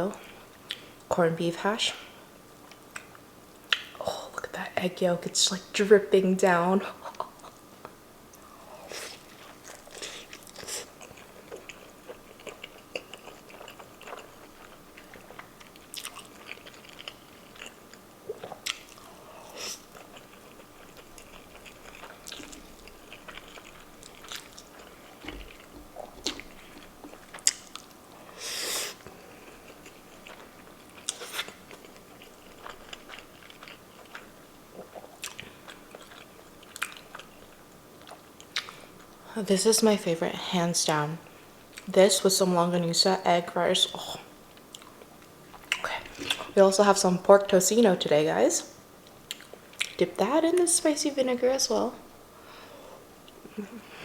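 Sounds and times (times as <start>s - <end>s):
chewing and biting: 9.2s - 28.0s, 29.0s - 39.1s.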